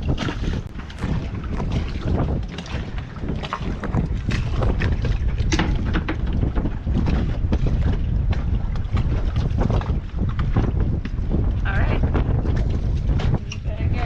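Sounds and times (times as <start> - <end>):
splashes: 0.0 - 10.0
wind buffeting microphone: 0.0 - 14.0.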